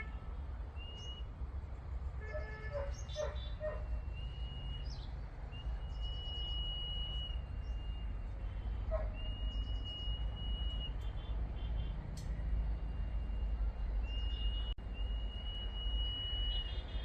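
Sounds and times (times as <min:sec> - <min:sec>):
bird whistling: 0:00.8 - 0:01.3, 0:02.8 - 0:11.3, 0:13.0 - 0:16.8.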